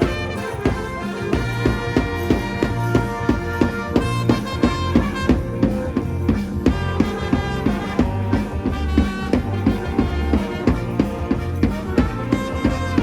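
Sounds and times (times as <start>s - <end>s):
band melody of held notes: 0.0s - 13.0s
drum kit beat: 0.0s - 13.0s.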